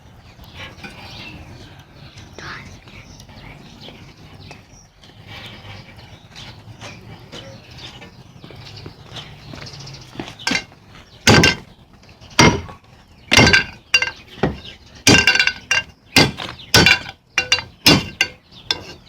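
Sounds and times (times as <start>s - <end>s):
hammer striking metal on anvil: 10.5s - 10.7s, 11.3s - 11.6s, 12.4s - 12.7s, 13.3s - 19.0s.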